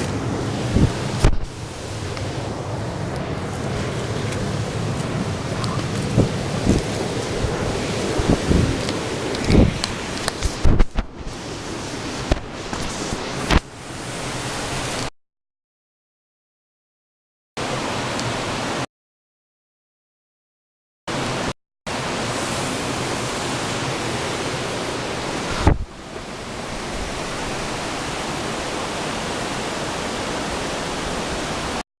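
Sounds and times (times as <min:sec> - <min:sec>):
waterfall rushing: 0:00.0 - 0:15.1, 0:17.6 - 0:18.8, 0:21.1 - 0:31.8
short low thump: 0:01.2 - 0:01.5.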